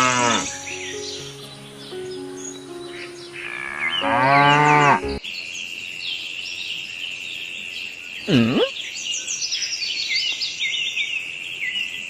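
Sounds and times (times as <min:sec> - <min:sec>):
cow mooing: 0:00.0 - 0:00.5, 0:03.4 - 0:05.2
birds chirping: 0:00.0 - 0:07.1.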